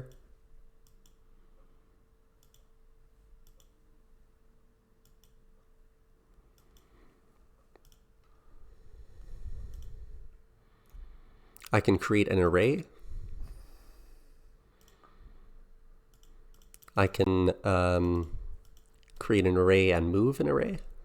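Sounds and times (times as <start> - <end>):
computer mouse clicks: 0.0 - 1.2, 2.4 - 3.8, 5.0 - 5.5, 6.5 - 6.9, 7.7 - 8.4, 9.6 - 10.0, 14.8 - 15.2, 16.1 - 17.0, 18.0 - 19.2
low steady hum: 0.0 - 21.0.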